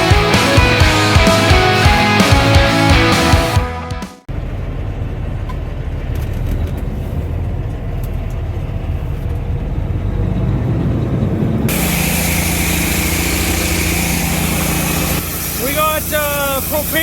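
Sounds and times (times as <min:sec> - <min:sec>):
harvest machinery engine drone: 0:04.3 - 0:17.0
hissing machine hum: 0:11.4 - 0:17.0.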